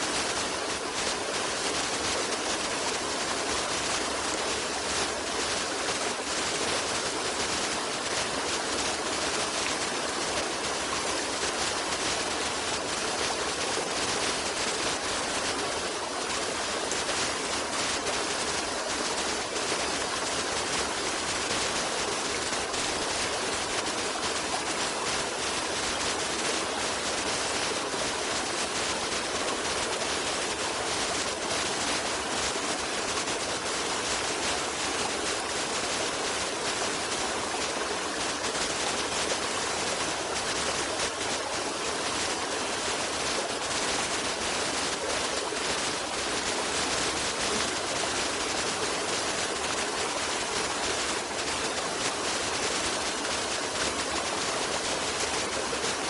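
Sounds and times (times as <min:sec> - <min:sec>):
stream water rushing: 0:00.0 - 0:56.0.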